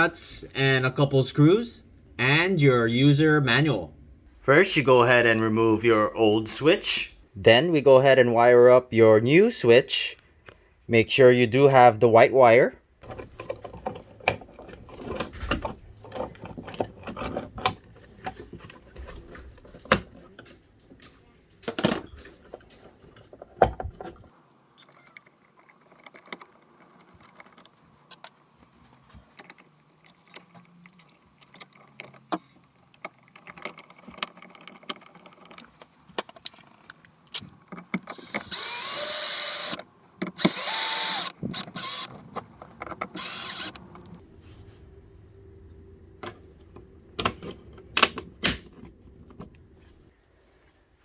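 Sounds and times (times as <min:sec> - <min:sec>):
power drill running: 0:38.1 - 0:39.8, 0:40.4 - 0:42.2, 0:43.1 - 0:44.2.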